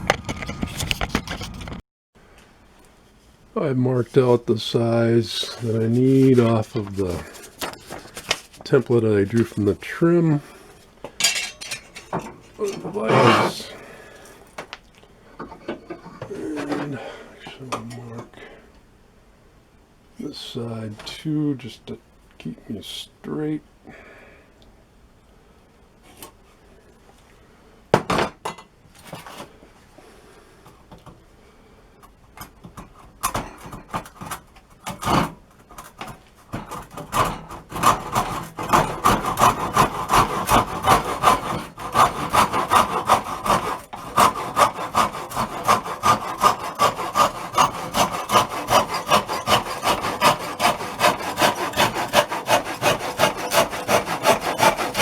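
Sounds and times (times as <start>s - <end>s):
hand saw cutting wood: 4.2s - 9.5s, 12.6s - 13.8s, 33.6s - 55.0s.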